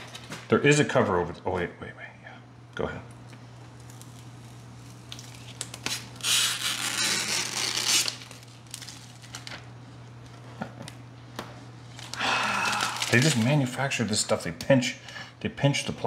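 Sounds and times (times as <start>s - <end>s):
plastic film crackling: 3.6s - 11.0s, 11.8s - 14.2s
plastic film ripping: 3.8s - 9.7s, 11.9s - 13.8s.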